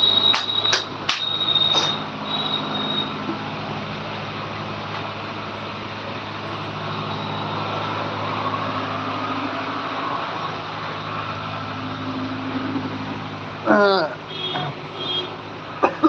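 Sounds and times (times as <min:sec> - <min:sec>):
road traffic noise: 0:00.0 - 0:16.0
vehicle engine running: 0:00.0 - 0:16.0.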